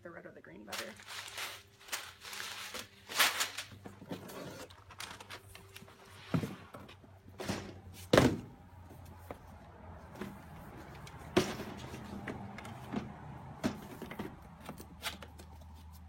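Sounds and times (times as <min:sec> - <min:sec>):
packaging rustling: 0:00.7 - 0:06.2.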